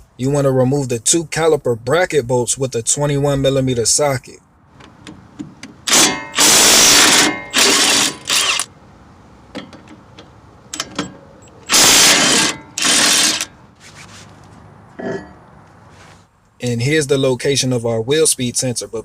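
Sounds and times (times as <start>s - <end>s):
power wrench bursts: 5.8s - 8.7s, 10.7s - 13.6s.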